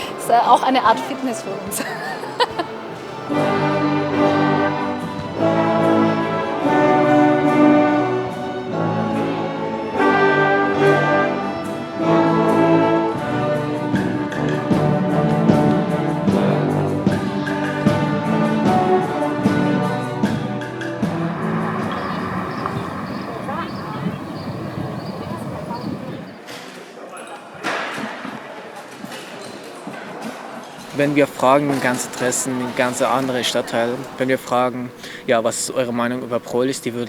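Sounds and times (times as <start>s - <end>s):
orchestra bowed strings chords: 0.0s - 26.2s.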